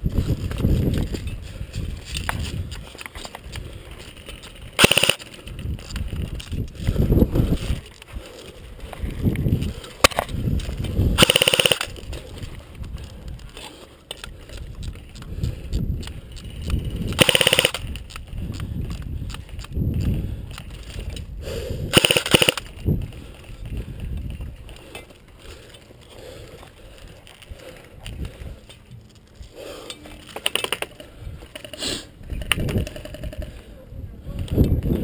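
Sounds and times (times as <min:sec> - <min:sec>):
airsoft guns firing: 0:04.8 - 0:05.3, 0:11.2 - 0:11.9, 0:17.2 - 0:17.8, 0:21.9 - 0:22.7.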